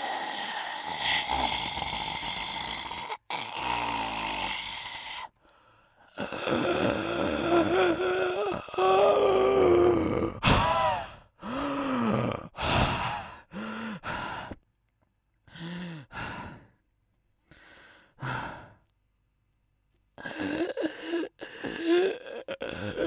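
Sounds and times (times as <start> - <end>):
man moaning: 0.0 - 5.3, 6.2 - 13.2
breathy sighs and exhalations: 0.0 - 14.6, 15.5 - 16.8, 17.5 - 18.8, 20.2 - 23.0.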